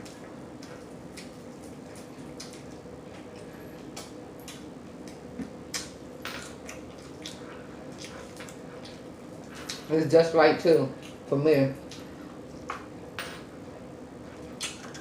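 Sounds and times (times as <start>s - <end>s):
crunchy chewing: 0.0s - 9.9s
wet mouth clicks: 14.6s - 14.9s.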